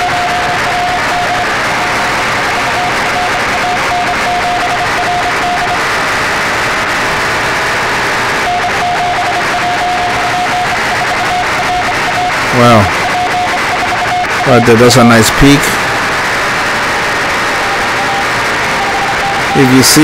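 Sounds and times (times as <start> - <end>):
morse code beeping: 0.0 - 5.9, 8.4 - 16.2, 17.1 - 20.0
radio static hiss: 0.0 - 20.0.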